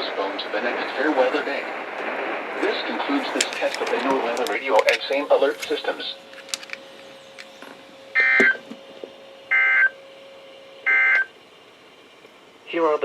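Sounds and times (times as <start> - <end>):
harsh buzzing data chirps: 5.1 - 11.9.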